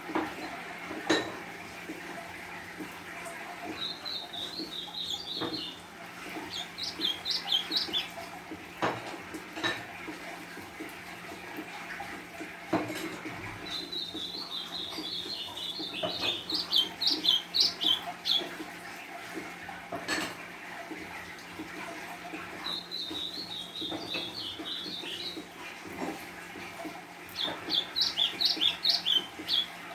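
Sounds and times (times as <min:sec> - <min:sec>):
songbird chirping: 0:03.6 - 0:08.4, 0:13.6 - 0:18.6, 0:22.6 - 0:25.5, 0:27.3 - 0:29.9.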